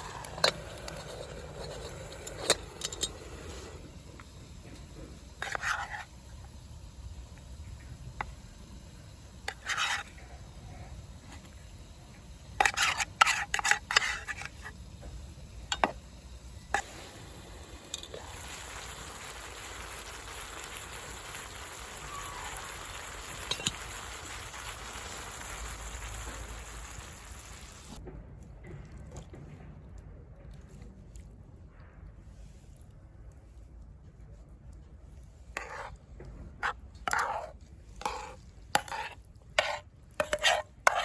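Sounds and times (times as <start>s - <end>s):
food sizzling in pan: 0.0s - 28.0s.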